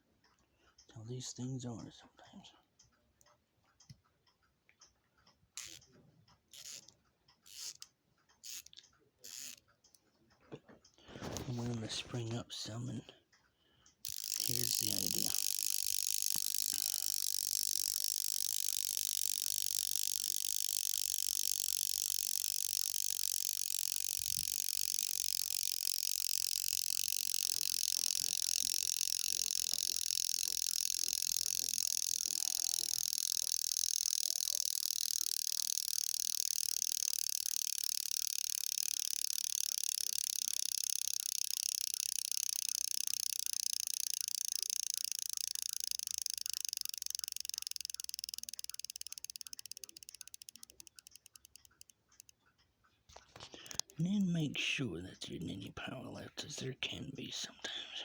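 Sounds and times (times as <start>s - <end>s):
alarm clock ringing: 14.1s - 50.5s.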